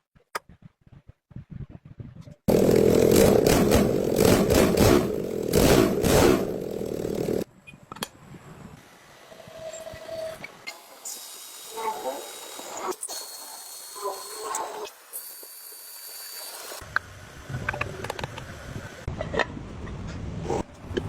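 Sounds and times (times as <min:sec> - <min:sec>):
engine revving loudly: 0:02.5 - 0:07.4.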